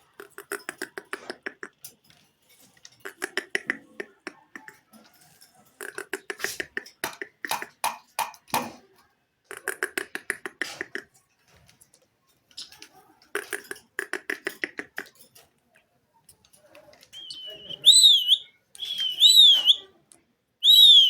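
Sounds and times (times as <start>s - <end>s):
parakeet chattering: 0.0s - 1.8s, 3.0s - 4.9s, 5.8s - 7.8s, 13.4s - 15.1s, 17.2s - 19.9s, 20.6s - 21.0s.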